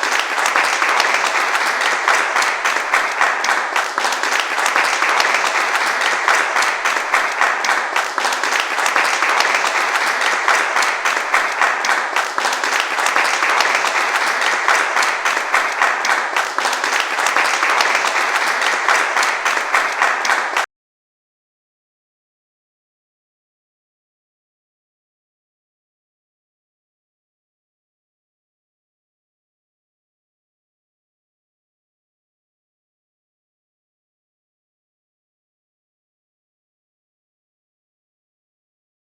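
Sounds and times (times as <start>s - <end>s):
large audience applauding: 0.0s - 20.7s.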